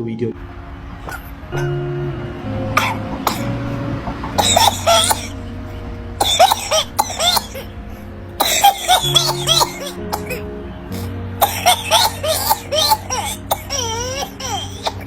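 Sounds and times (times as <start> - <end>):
background music: 0.0 - 15.0
rapid repeated coughing: 2.8 - 3.6, 4.4 - 5.4, 6.2 - 7.7, 8.4 - 15.0.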